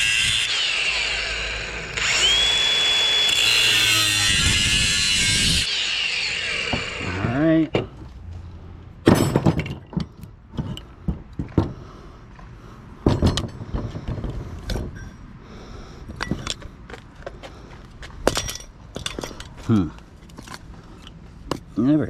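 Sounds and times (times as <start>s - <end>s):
metal knocks and clanks: 9.0s - 11.8s, 13.0s - 15.2s.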